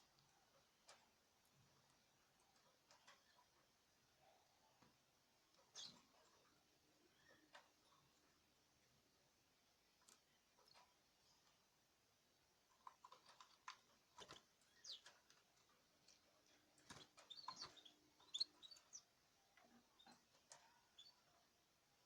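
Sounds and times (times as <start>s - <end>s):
small clicks and taps: 0.0s - 3.6s, 9.9s - 11.6s, 12.6s - 21.1s
birds chirping softly: 0.0s - 22.0s.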